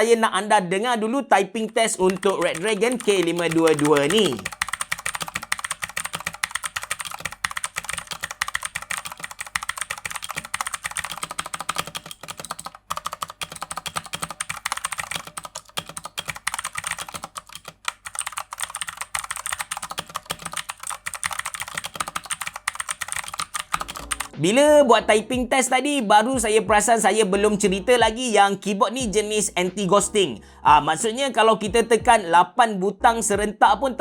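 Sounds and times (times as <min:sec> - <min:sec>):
fast mechanical keyboard typing: 0:01.6 - 0:24.4.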